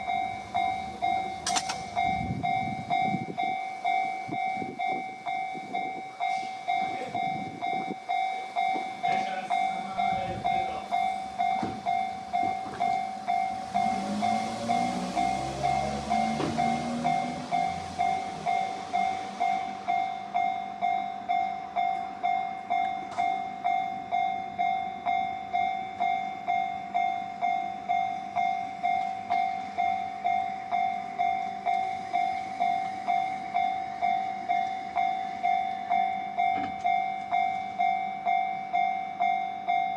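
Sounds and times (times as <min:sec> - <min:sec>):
level crossing warning bell: 0:00.0 - 0:39.9
train passing on rails: 0:00.0 - 0:39.9
train motor whine: 0:11.1 - 0:20.5.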